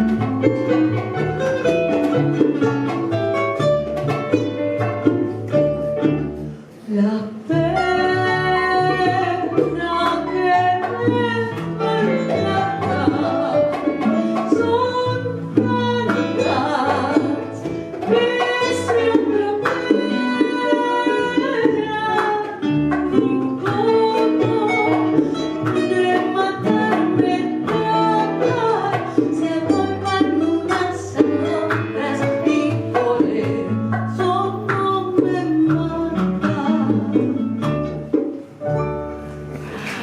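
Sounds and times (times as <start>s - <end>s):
band playing slow instrumental: 0.0s - 7.0s, 37.2s - 40.0s.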